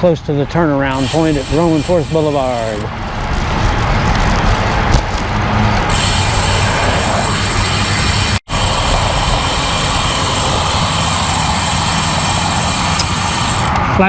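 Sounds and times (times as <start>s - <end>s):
road and traffic noise: 0.0s - 14.0s
wind rushing over microphone: 0.7s - 14.0s.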